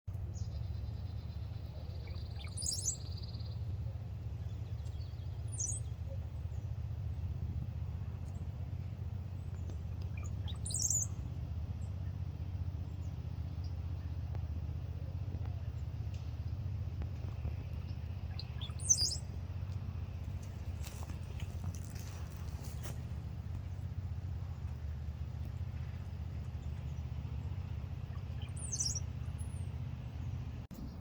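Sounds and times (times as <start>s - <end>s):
steady low rumble: 0.1s - 31.0s
sharp rising bird calls: 0.4s - 3.7s, 10.0s - 11.3s, 17.4s - 19.4s, 25.8s - 29.8s
bird trilling: 1.6s - 3.6s, 9.9s - 11.2s, 17.7s - 19.4s, 28.0s - 29.8s.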